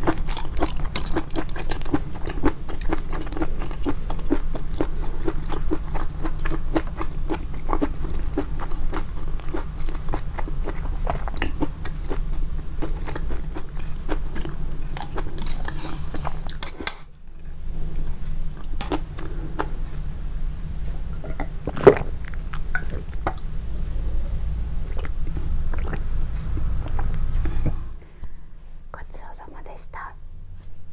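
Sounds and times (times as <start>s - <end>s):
wet chewing and mouth clicks: 0.0s - 17.0s, 21.2s - 23.5s, 24.9s - 27.8s
low hum: 17.3s - 30.9s.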